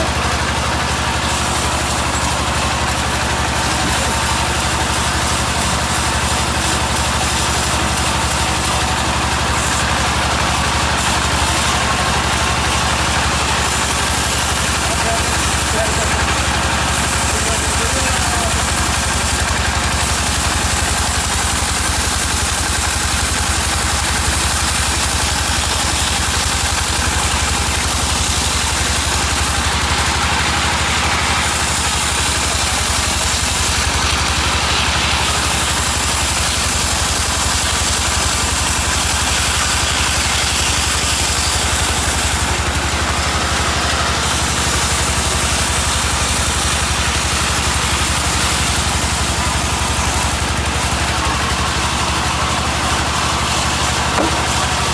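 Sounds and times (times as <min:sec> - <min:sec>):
deep engine drone: 0:00.0 - 0:17.9
constant machinery hiss: 0:00.0 - 0:54.9.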